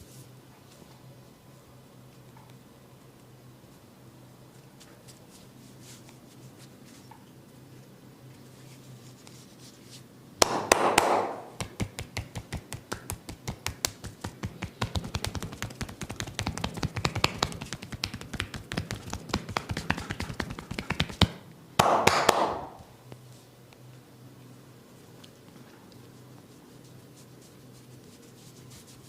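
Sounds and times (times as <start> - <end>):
rapid tapping on head: 10.4 - 22.8.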